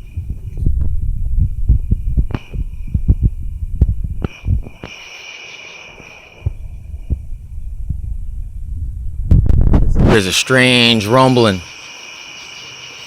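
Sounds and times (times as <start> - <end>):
low rumbling and thumping: 0.0 - 4.9, 6.4 - 10.2
high insect trill: 0.0 - 7.6, 10.0 - 13.0.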